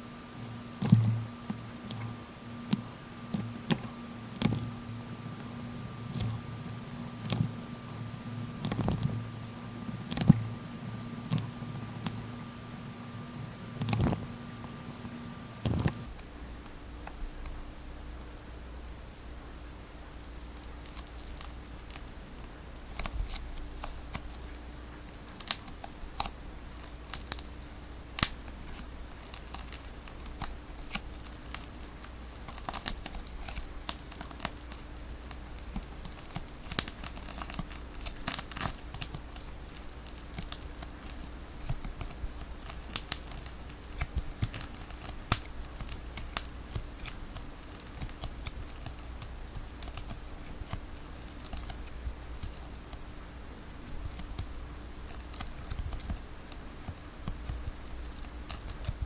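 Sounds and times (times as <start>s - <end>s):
sticky tape tearing: 20.5s - 53.0s
scissors snipping tape: 25.2s - 53.0s.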